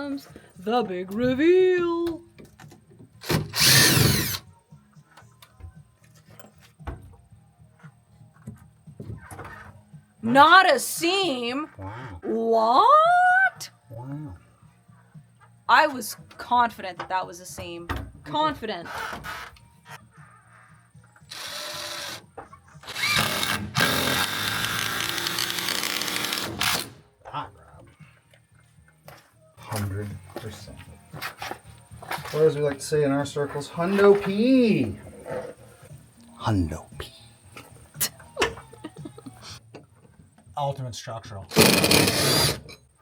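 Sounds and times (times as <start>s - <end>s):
power drill whirring: 3.3s - 4.4s, 21.3s - 22.2s, 22.8s - 27.0s, 41.5s - 42.8s.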